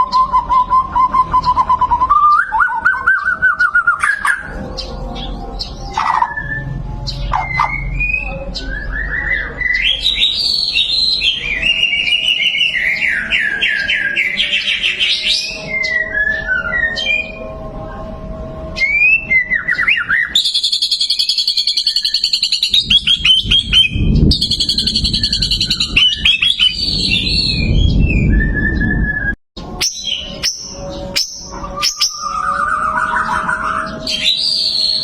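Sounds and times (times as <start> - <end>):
bird singing whistles and trills: 0.0 - 18.1, 18.7 - 35.0.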